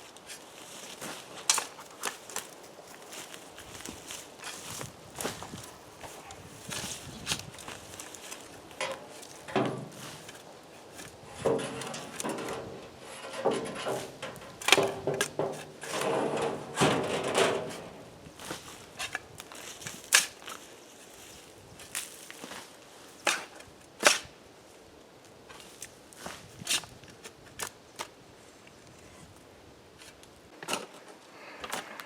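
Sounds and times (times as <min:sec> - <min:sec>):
wooden boards knocking together: 0:08.8 - 0:10.4, 0:11.0 - 0:18.0.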